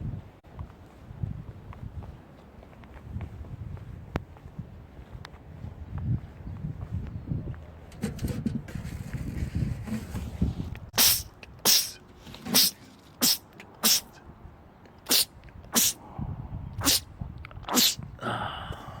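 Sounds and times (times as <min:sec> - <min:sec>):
man sneezing: 0:11.0 - 0:14.2, 0:15.1 - 0:16.0, 0:16.8 - 0:17.1, 0:17.7 - 0:18.5.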